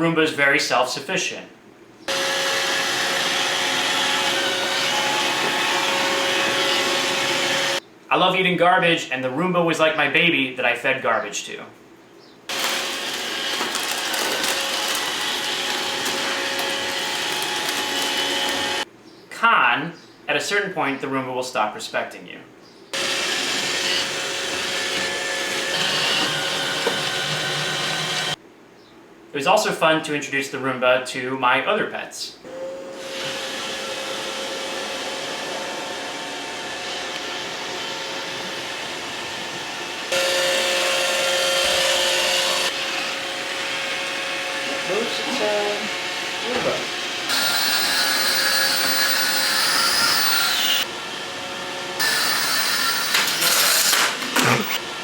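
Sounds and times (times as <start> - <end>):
robot vacuum whirring: 2.1 - 7.8, 12.5 - 18.8, 23.0 - 28.4, 46.6 - 50.9, 52.0 - 54.9.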